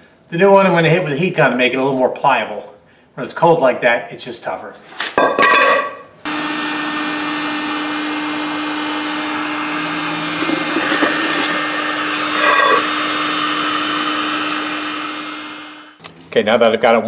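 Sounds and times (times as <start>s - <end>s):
heat gun humming: 6.3s - 16.0s.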